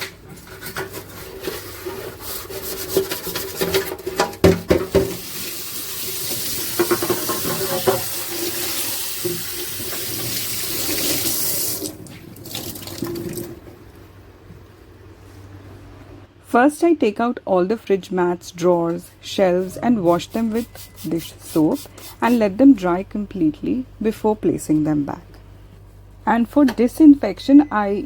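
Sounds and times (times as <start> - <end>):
tap water running into sink: 4.7 - 13.6.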